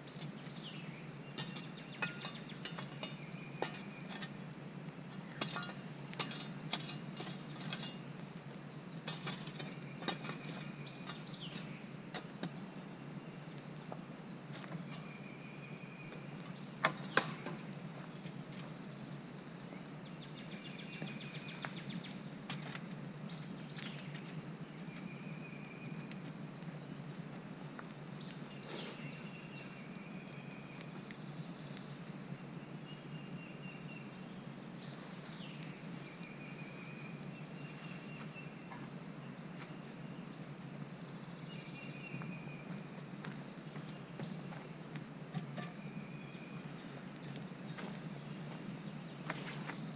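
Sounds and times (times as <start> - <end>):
birds calling: 0.0 - 49.9
low background noise: 0.0 - 49.9.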